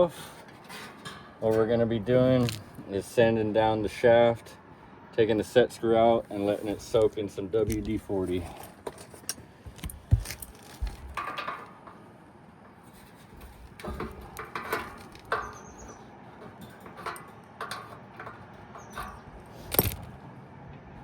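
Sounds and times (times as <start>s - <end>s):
hand tools clinking on metal: 13.8s - 20.1s.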